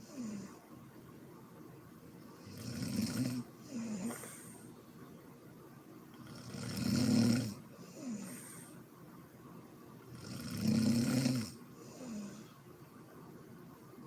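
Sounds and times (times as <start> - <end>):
woman snoring: 0.0 - 0.6, 2.4 - 4.6, 6.2 - 8.7, 10.1 - 12.5.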